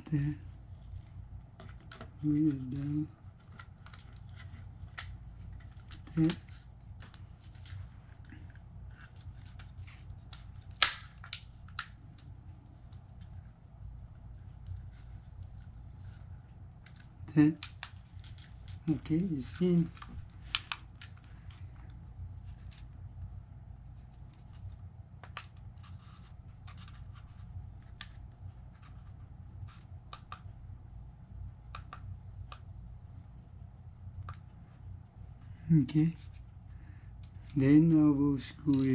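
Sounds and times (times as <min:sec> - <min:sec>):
low steady hum: 0:00.0 - 0:38.9
plastic snap: 0:10.3 - 0:12.3.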